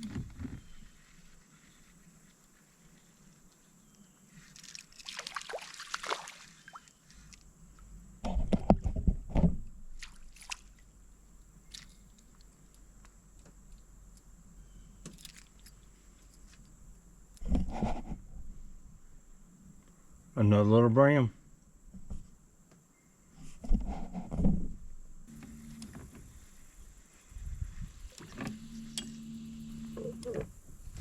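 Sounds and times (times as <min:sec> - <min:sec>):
water splashing: 0:04.6 - 0:06.9
small clicks: 0:28.1 - 0:30.5.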